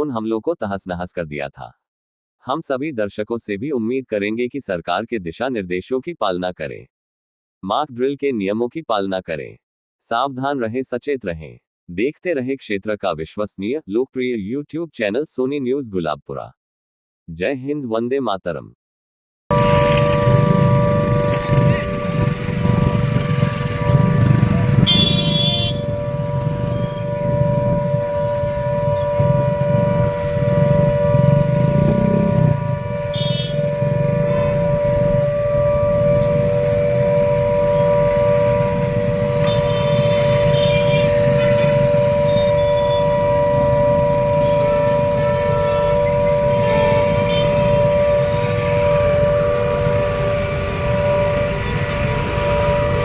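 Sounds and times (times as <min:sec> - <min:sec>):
air-raid siren: 0:19.5 - 0:53.0
brief high-pitched tone: 0:19.5 - 0:53.0
low street noise: 0:19.5 - 0:53.0.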